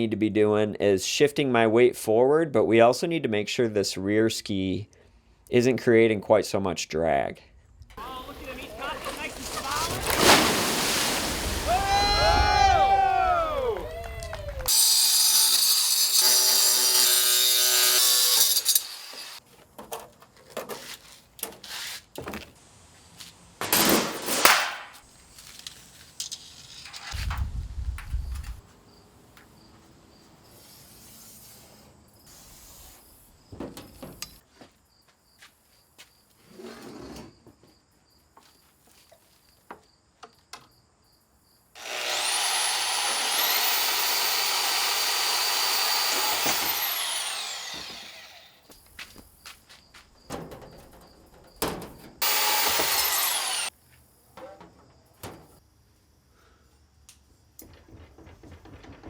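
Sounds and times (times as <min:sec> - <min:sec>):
power tool whining: 0:41.8 - 0:48.7, 0:52.2 - 0:53.7.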